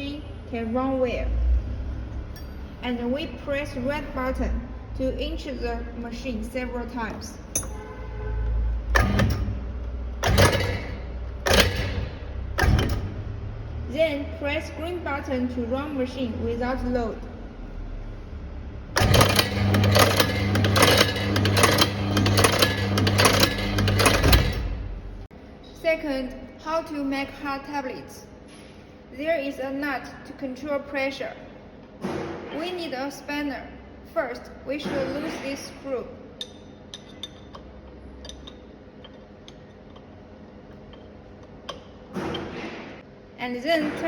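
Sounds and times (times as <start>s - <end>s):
metal spanner clicking on screw: 7.5s - 7.9s
punch mechanism clacking: 10.2s - 13.2s, 19.0s - 24.8s
electric motor hum: 18.9s - 25.2s.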